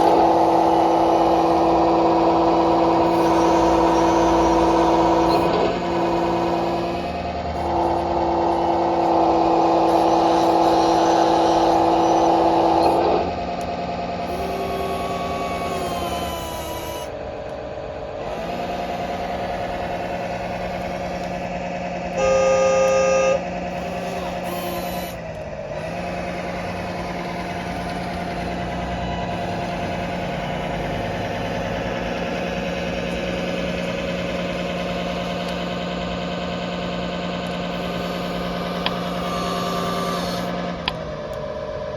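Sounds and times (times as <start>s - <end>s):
simulated excavator engine: 0.0s - 41.9s
horn-like tone: 22.1s - 25.2s
short loud horn blast: 22.2s - 23.4s.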